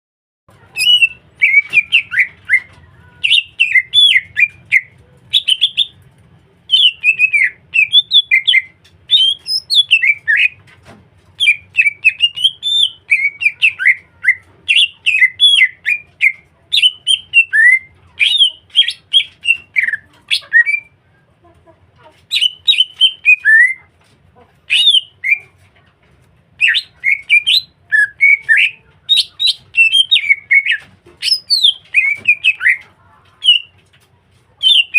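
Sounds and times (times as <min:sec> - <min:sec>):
bird singing chirps and whistles: 0:00.8 - 0:06.0, 0:06.7 - 0:10.6, 0:11.4 - 0:20.9, 0:22.3 - 0:23.8, 0:24.7 - 0:25.4, 0:26.6 - 0:32.8, 0:34.6 - 0:34.9.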